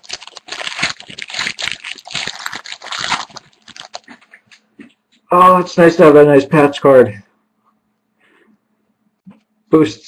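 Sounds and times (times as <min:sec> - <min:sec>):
plastic wrapper tearing and crinkling: 0:00.0 - 0:04.7.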